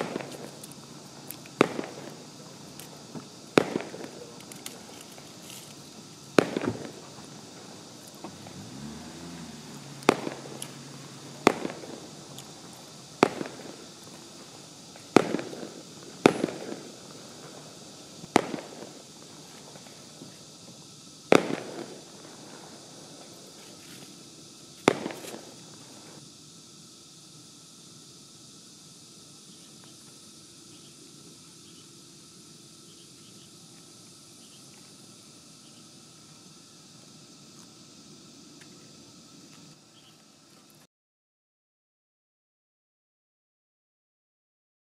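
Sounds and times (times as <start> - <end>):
firework bangs with echo: 0.0 - 23.6, 24.2 - 26.2
smoke grenade hissing: 0.0 - 40.5.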